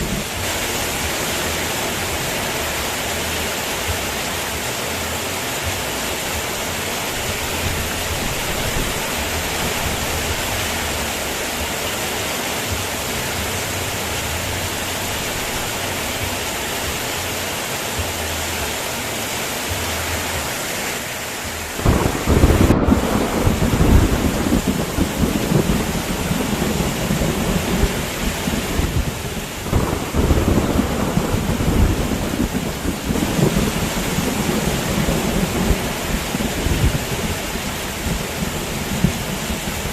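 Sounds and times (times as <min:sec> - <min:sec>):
heavy rain hissing: 0:00.0 - 0:39.9
thunder rumbling: 0:06.4 - 0:11.5, 0:21.7 - 0:39.9.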